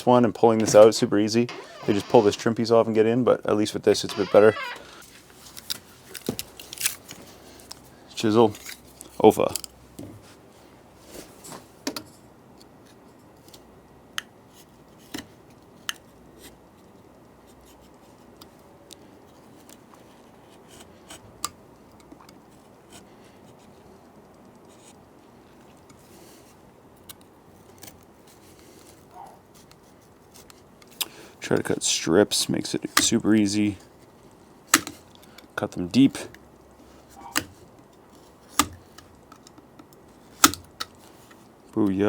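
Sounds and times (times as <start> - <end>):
chisel clicking and scraping wood: 37.2 - 41.0.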